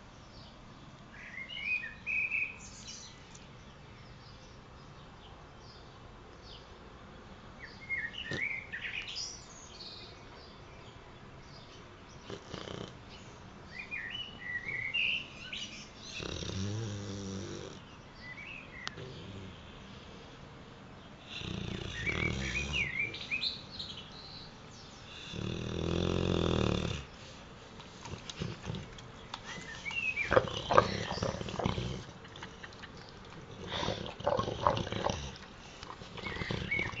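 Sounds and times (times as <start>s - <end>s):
birds chirping: 0.0s - 6.8s, 7.6s - 37.0s
dog snoring: 12.2s - 13.0s, 16.1s - 17.8s, 18.9s - 19.6s, 21.2s - 23.1s, 25.1s - 27.1s, 28.1s - 32.4s, 33.4s - 37.0s.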